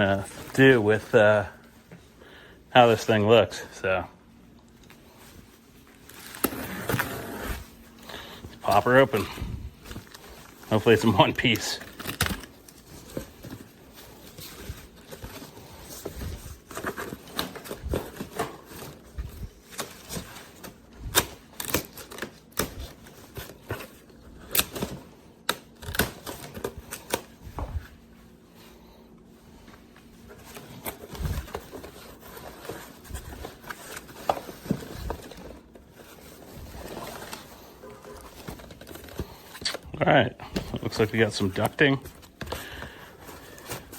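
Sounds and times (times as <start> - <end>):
cardboard box being unpacked: 5.9 - 28.0, 30.2 - 39.8.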